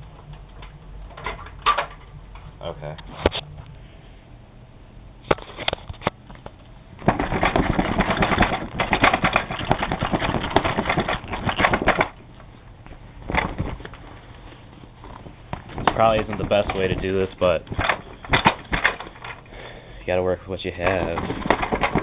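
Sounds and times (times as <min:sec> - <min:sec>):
clicks and knocks: 0:00.2 - 0:02.5, 0:05.3 - 0:12.2, 0:13.3 - 0:14.0, 0:15.1 - 0:19.4, 0:20.9 - 0:22.0.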